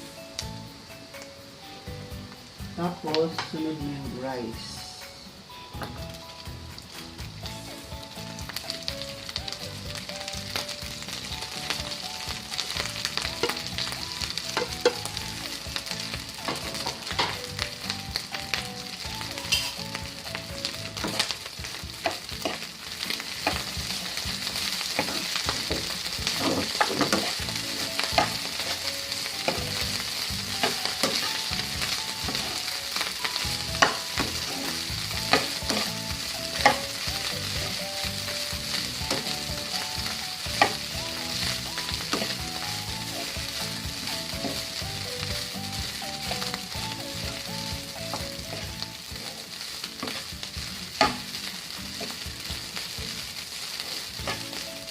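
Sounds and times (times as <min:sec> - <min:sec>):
rice sizzling in hot oil: 0:00.0 - 0:54.9
spatula scraping and knocking pan: 0:12.8 - 0:15.1, 0:21.0 - 0:32.7, 0:33.8 - 0:37.8, 0:40.0 - 0:44.8, 0:50.0 - 0:50.4, 0:51.0 - 0:52.2, 0:54.2 - 0:54.6.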